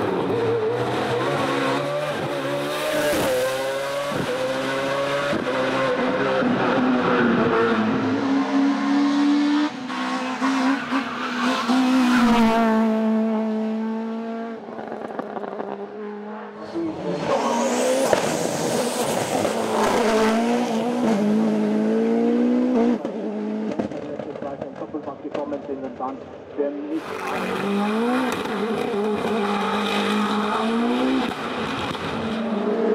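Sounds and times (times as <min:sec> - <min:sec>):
racing car engines at full throttle: 0:00.0 - 0:32.9.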